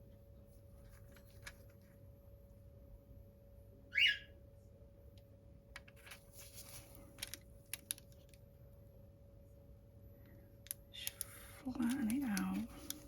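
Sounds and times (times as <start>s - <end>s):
foil crinkling: 6.0s - 8.4s, 11.0s - 13.0s.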